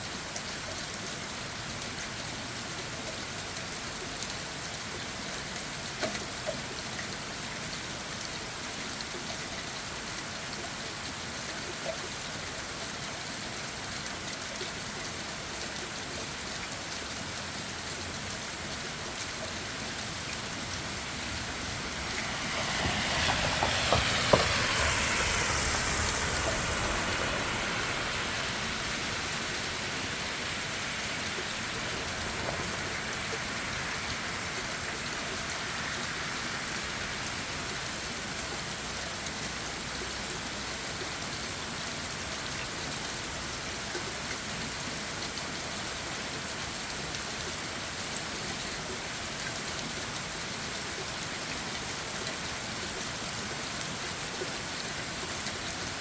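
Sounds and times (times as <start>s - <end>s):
rain falling on leaves: 0.0s - 56.0s
vehicle passing by: 20.6s - 34.8s.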